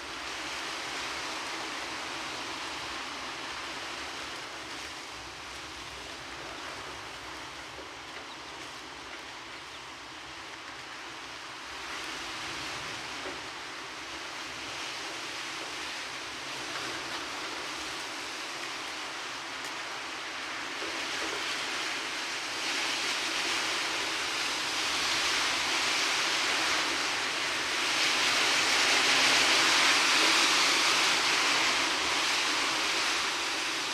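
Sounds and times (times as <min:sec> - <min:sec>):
heavy rain hissing: 0:19.0 - 0:33.9.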